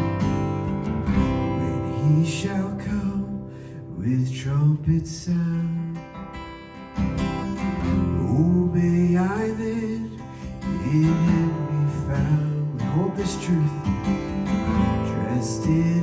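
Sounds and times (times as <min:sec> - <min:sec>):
acoustic guitar strumming: 0:00.0 - 0:16.0
instrumental worship music: 0:08.0 - 0:16.0.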